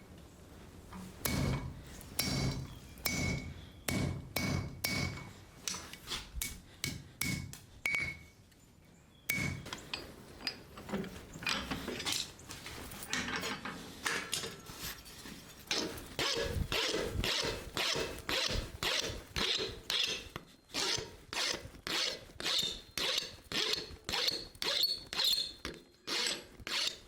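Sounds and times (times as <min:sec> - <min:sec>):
hammer striking steel on anvil: 0:01.2 - 0:05.8, 0:06.4 - 0:08.3, 0:09.3 - 0:09.8.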